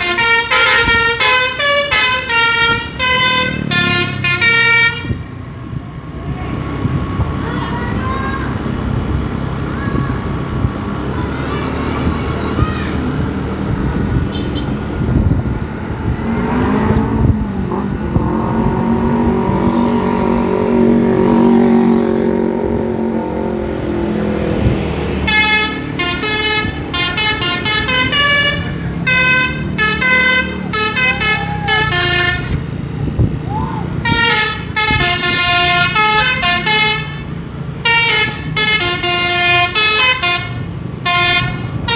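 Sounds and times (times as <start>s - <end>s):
musical bus horn tune: 0.0s - 5.2s, 14.3s - 14.8s, 25.2s - 32.7s, 34.0s - 41.9s
bus engine running: 0.0s - 41.9s.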